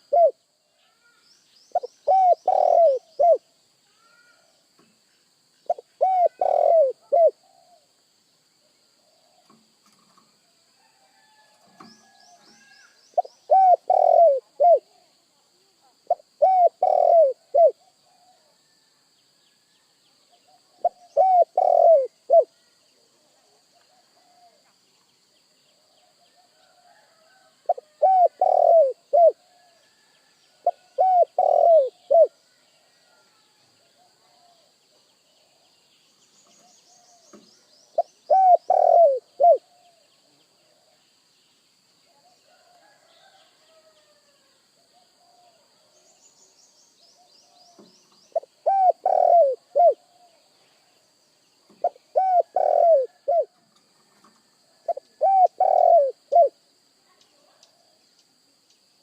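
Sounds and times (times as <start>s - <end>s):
dove cooing: 0.0s - 0.4s, 1.7s - 3.5s, 5.7s - 7.9s, 12.6s - 15.1s, 16.0s - 18.5s, 20.4s - 22.5s, 27.6s - 29.7s, 30.6s - 32.4s, 38.0s - 40.0s, 48.4s - 50.4s, 51.8s - 53.6s, 54.8s - 56.6s
small birds chirping: 0.0s - 10.3s, 11.8s - 18.4s, 19.6s - 26.8s, 27.7s - 33.0s, 33.9s - 42.4s, 44.9s - 59.0s.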